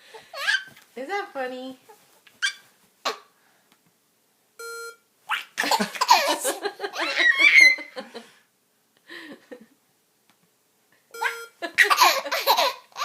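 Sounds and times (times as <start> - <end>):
baby laughing: 0.2 - 0.7, 5.3 - 8.0, 11.2 - 13.0
short electronic beep: 4.6 - 5.0, 11.2 - 11.6.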